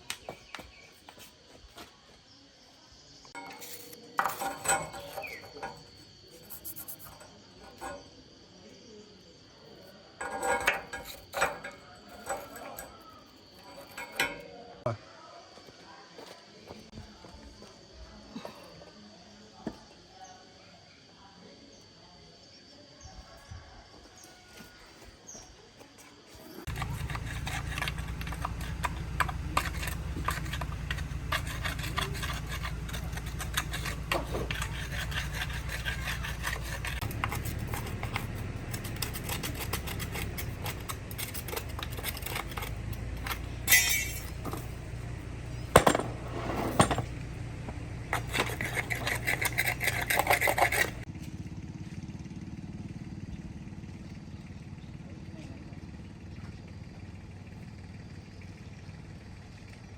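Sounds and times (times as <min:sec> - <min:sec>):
scraping and clattering: 0:03.3 - 0:08.2, 0:10.2 - 0:14.7, 0:26.6 - 0:51.1
motor running: 0:26.7 - 0:52.5.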